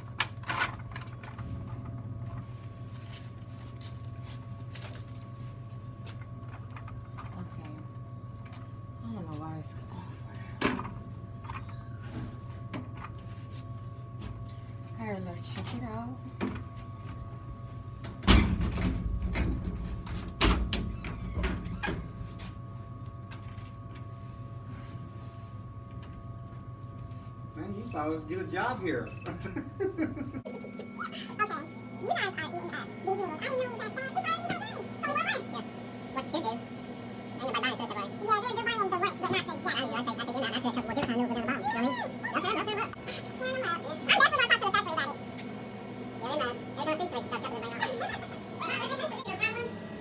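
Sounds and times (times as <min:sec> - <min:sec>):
steady hum: 0:00.0 - 0:50.0
vending machine bangs: 0:18.2 - 0:21.0.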